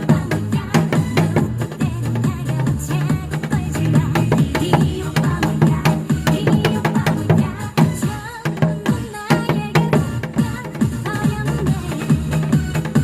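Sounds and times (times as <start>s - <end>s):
dance track with techno beat: 0.0s - 13.0s
drum strokes sharp hits: 0.0s - 13.0s.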